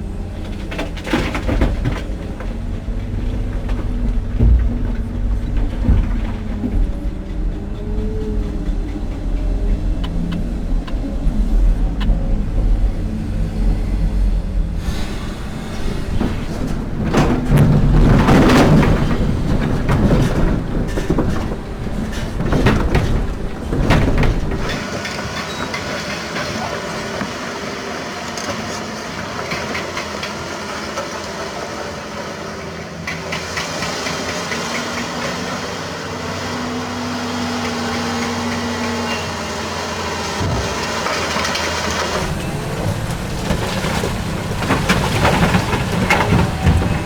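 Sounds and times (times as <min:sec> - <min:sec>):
excavator diesel engine under load: 0:00.0 - 0:47.0
machine clanking and rattling: 0:00.1 - 0:13.0, 0:13.8 - 0:27.4, 0:38.2 - 0:47.0.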